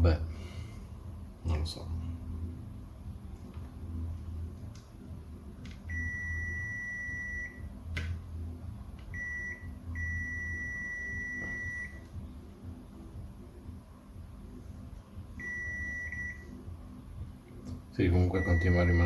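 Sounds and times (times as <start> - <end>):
multimeter continuity beeps: 5.8 - 7.7, 9.1 - 12.2, 15.4 - 16.7, 18.2 - 19.0.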